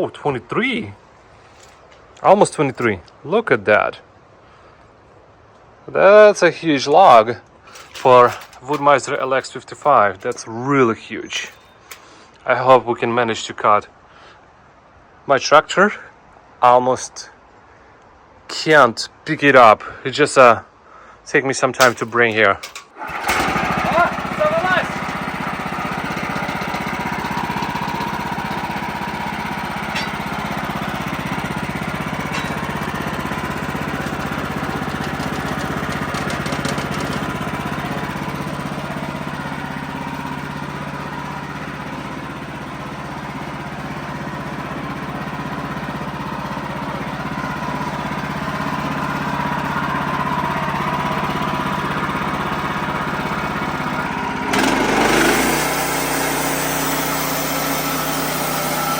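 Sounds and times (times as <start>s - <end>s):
sawmill engine running: 7.8s - 10.5s, 21.8s - 58.9s.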